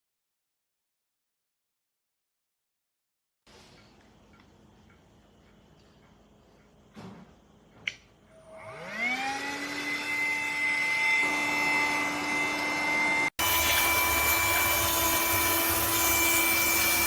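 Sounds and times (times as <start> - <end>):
vacuum cleaner motor whining: 8.4 - 17.0.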